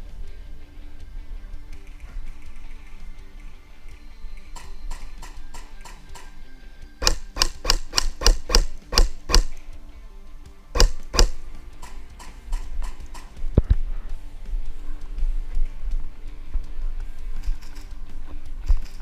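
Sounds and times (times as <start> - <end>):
background music with guitar: 0.0 - 19.0
airsoft rifle shots: 7.0 - 9.6, 10.8 - 13.4.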